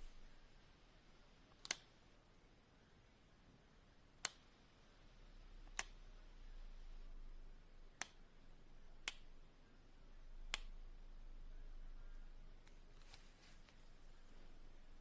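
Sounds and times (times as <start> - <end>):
sharp clicks: 1.5 - 2.0.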